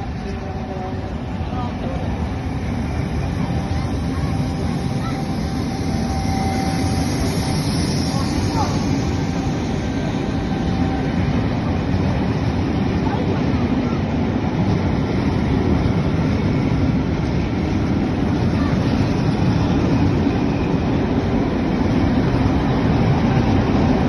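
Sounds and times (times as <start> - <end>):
train rumbling: 0.0 - 24.0.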